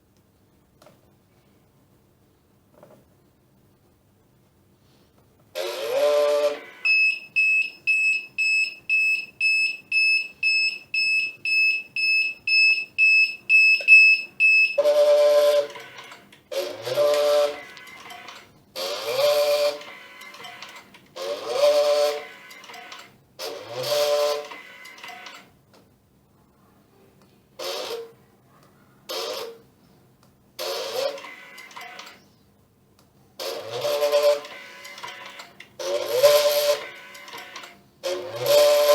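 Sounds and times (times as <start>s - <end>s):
cutting machine motor whine: 5.6s - 6.8s, 14.8s - 20.6s.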